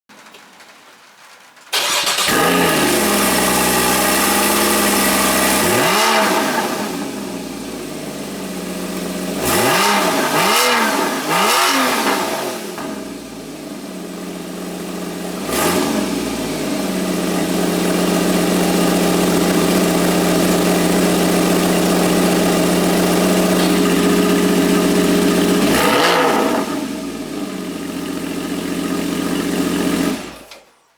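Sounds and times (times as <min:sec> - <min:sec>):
car engine starting and idling: 0:01.2 - 0:30.8
engine throttle blips: 0:01.7 - 0:07.8, 0:17.4 - 0:30.5.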